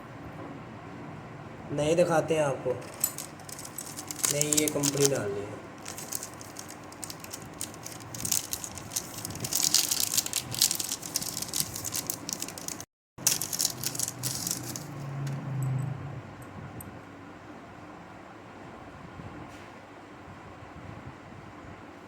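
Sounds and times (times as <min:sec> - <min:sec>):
metal tools clinking and rattling: 0:02.8 - 0:05.2, 0:05.8 - 0:15.8.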